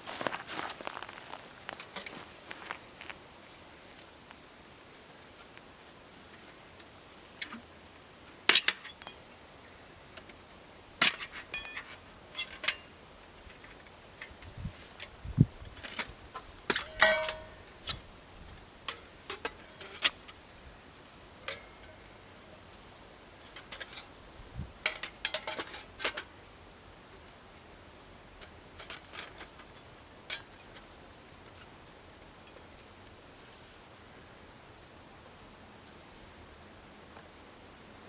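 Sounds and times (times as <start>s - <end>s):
ringing clink: 16.9s - 17.6s.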